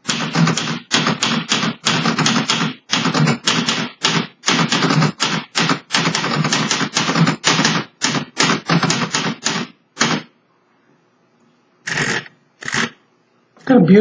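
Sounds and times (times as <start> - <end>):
manual typewriter typing: 0.0 - 10.3.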